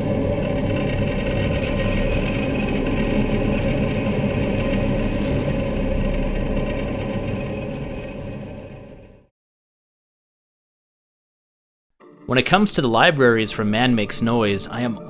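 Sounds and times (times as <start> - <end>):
dense low rumbling drone: 0.0 - 9.3.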